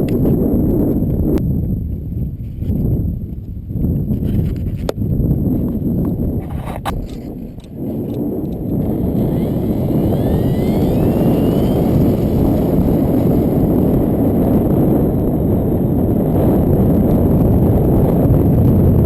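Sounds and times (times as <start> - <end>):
wind buffeting microphone: 0.0 - 19.0
electric motor whine: 8.6 - 15.4.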